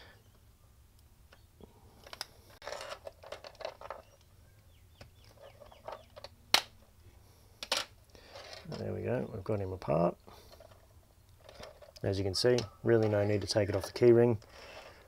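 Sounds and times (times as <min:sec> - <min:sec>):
plastic clicks: 0:02.0 - 0:04.3
plastic scraping and creaking: 0:02.0 - 0:04.3, 0:07.6 - 0:09.2, 0:10.4 - 0:15.0
plastic snapping with a sharp crack: 0:06.5 - 0:06.8.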